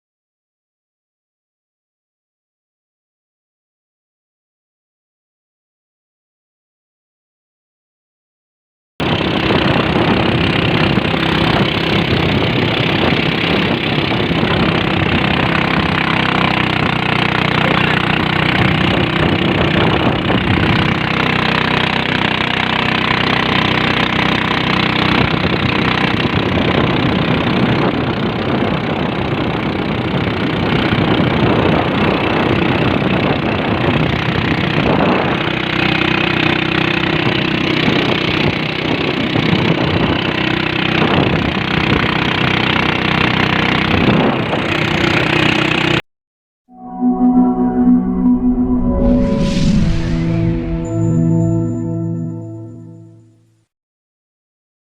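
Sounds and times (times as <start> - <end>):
boat engine running: 9.0 - 46.0.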